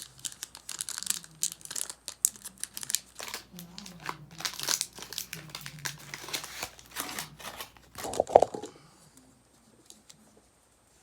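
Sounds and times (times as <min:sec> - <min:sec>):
foil wrapper crinkling and tearing: 0:00.0 - 0:08.7.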